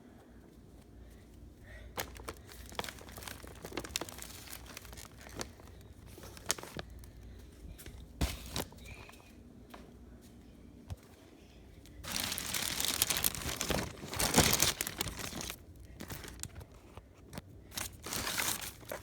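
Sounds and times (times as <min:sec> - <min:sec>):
wrapping crinkling and tearing: 0:01.9 - 0:07.0, 0:12.0 - 0:19.0.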